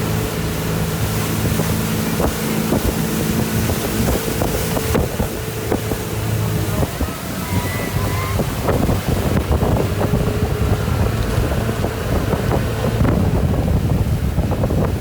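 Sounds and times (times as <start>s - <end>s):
motorboat engine running: 0.0s - 15.0s
water slapping and splashing: 0.0s - 15.0s
wind buffeting microphone: 0.0s - 15.0s.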